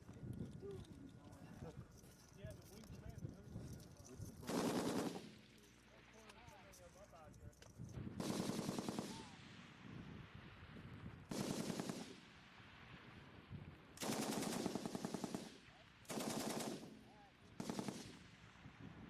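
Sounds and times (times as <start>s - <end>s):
machine gun bursts: 4.4s - 5.4s, 8.2s - 9.2s, 11.3s - 12.1s, 14.0s - 15.5s, 16.1s - 16.9s, 17.6s - 18.1s.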